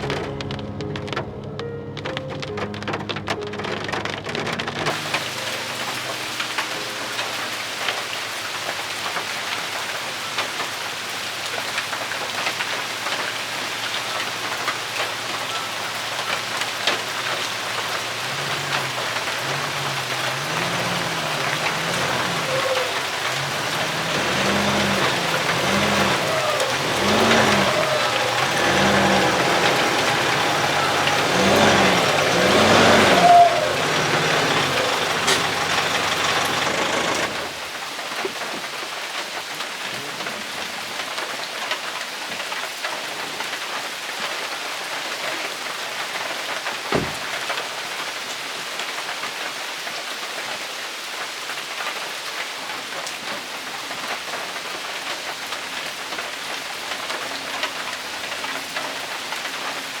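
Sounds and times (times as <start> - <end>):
vehicle engine driving: 0.0 - 10.5, 11.1 - 37.8, 46.9 - 47.6
steady rain falling: 0.0 - 60.0
short thump: 46.9 - 47.4.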